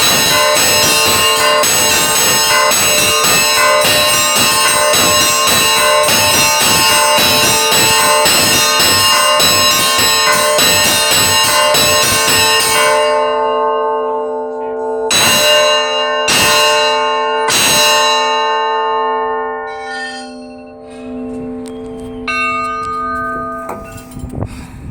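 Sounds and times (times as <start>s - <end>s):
church bells ringing: 0.0s - 24.4s
bells humming: 0.0s - 24.9s
single bell strokes: 19.7s - 24.4s.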